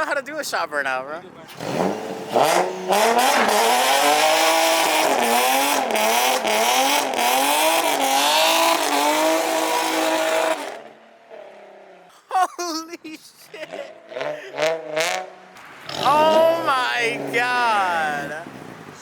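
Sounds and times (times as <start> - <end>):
car engine at high revs: 1.5 - 12.0, 14.0 - 19.0
tyres squealing: 15.9 - 18.5.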